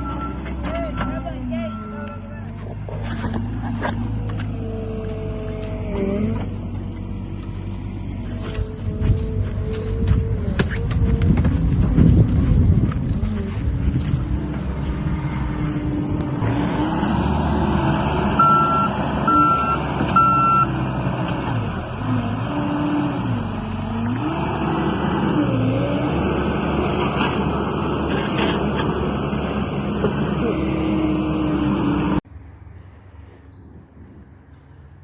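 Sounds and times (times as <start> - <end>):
backup alarm beeps: 0.0 - 2.3, 18.4 - 20.7
diesel engine rising and falling: 0.0 - 35.0.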